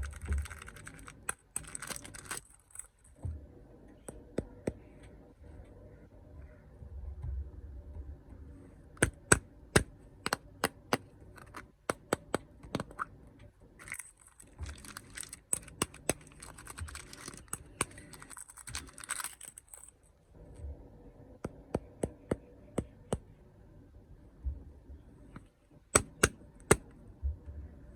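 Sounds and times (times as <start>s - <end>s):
plastic wrapper crinkling and tearing: 0.0s - 3.1s, 13.8s - 20.0s.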